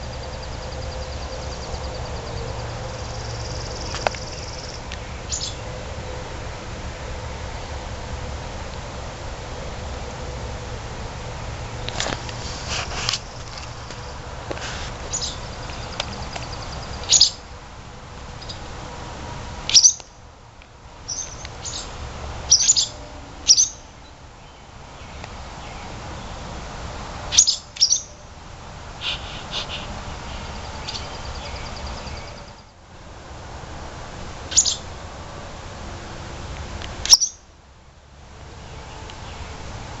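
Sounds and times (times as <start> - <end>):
swallows alarm chirps: 0.0 - 5.6, 15.1 - 17.4, 19.7 - 20.0, 21.1 - 23.9, 27.4 - 28.2, 29.6 - 32.7, 34.5 - 34.9, 37.1 - 37.4
swallows twittering: 15.1 - 17.4.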